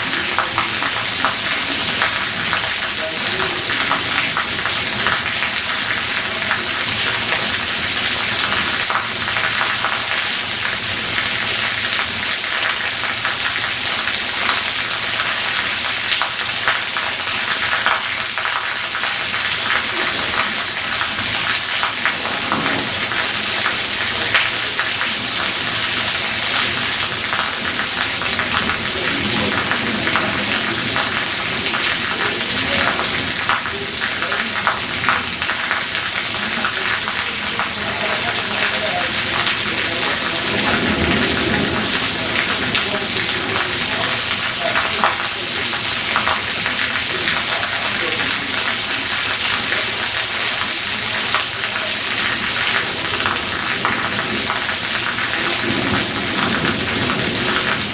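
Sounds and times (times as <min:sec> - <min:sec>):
heavy rain: 0:00.0 - 0:57.9.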